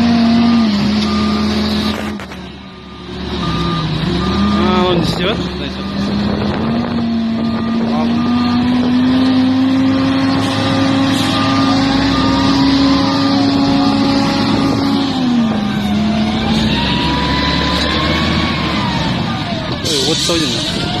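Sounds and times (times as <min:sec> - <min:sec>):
heavy equipment engine droning: 0:00.0 - 0:21.0
wavering high tones: 0:10.8 - 0:19.1.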